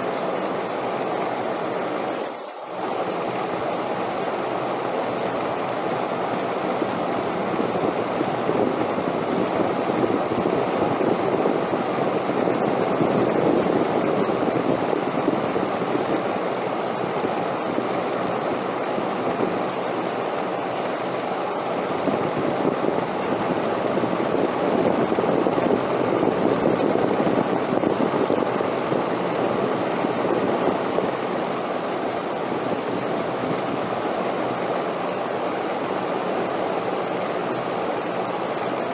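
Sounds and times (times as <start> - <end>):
wind blowing: 21.5 - 37.1.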